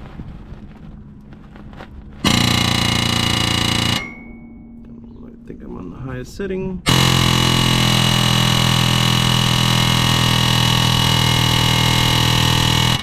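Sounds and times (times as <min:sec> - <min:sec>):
pneumatic air hammer buzzing: 0:02.2 - 0:04.4, 0:06.9 - 0:13.0.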